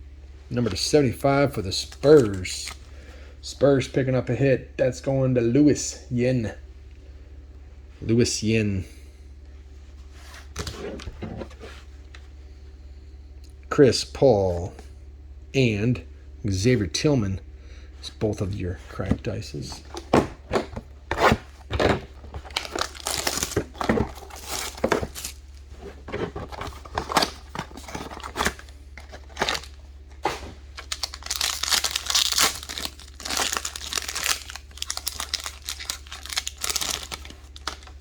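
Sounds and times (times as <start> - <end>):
card packs tearing open: 1.5 - 2.9, 19.6 - 38.0
wrappers crinkling: 1.7 - 2.9, 19.6 - 38.0.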